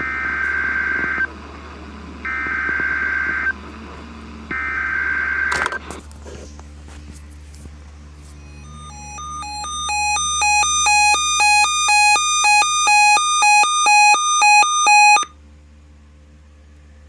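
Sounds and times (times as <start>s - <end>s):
low steady hum: 5.9s - 17.0s
two-tone electronic alert beeps: 8.4s - 15.3s.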